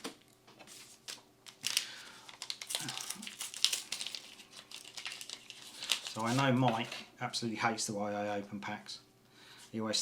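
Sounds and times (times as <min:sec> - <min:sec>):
foil wrapper crinkling: 0:00.7 - 0:07.0.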